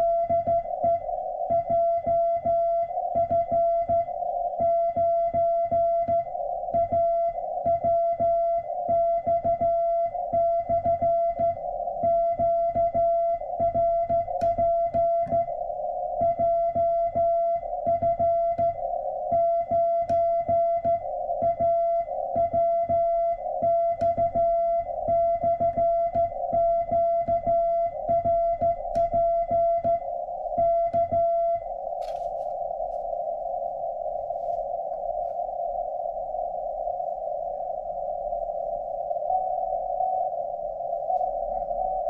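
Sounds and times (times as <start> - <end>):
morse code beeps: 0.0 - 33.2.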